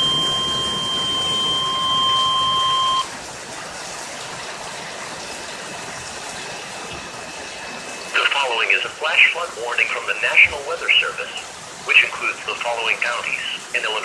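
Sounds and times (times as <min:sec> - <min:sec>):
weather radio alert beep: 0:00.0 - 0:03.2, 0:08.1 - 0:14.0
low hiss: 0:08.0 - 0:14.0.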